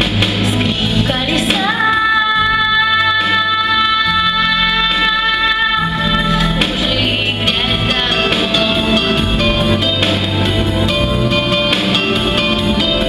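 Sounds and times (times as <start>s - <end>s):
instrumental backing track: 0.0s - 13.0s
girl singing: 1.0s - 8.8s.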